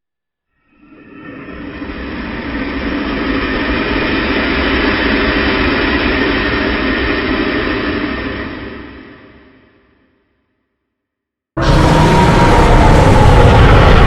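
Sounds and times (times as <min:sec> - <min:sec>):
loud rushing rumble: 0:11.6 - 0:14.0.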